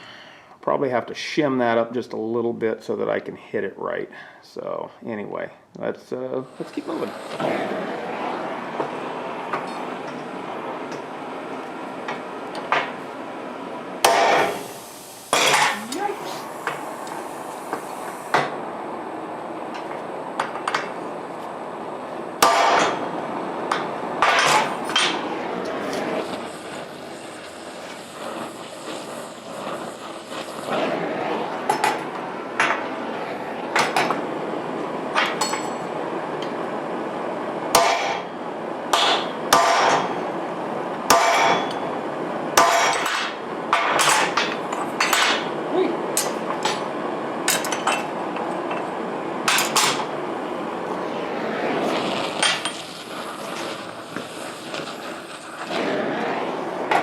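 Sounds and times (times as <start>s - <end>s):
steady background noise: 0.7s - 57.0s
hammer striking steel: 14.0s - 14.6s, 22.4s - 23.0s, 23.7s - 25.2s, 37.8s - 38.3s, 38.9s - 40.2s, 41.1s - 41.8s, 42.6s - 45.5s, 46.2s - 46.9s, 49.5s - 50.1s.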